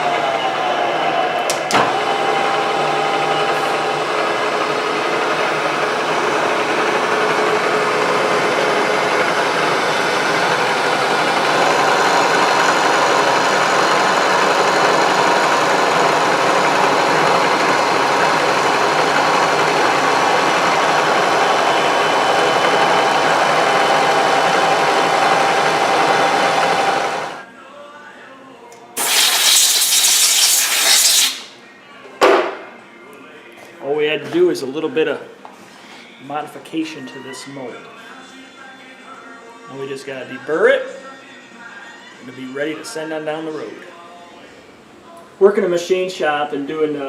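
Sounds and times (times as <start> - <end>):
machine tool whirring: 29.0 - 31.5.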